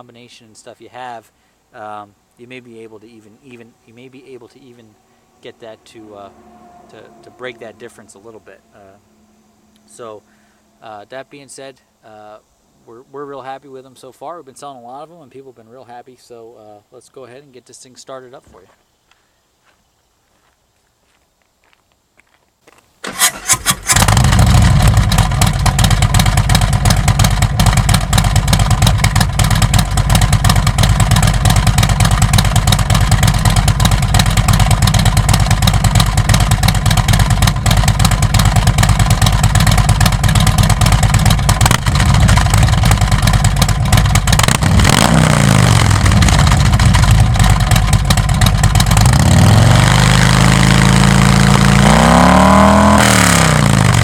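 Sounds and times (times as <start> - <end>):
motorcycle engine idling and revving: 5.0 - 10.7, 23.1 - 54.0.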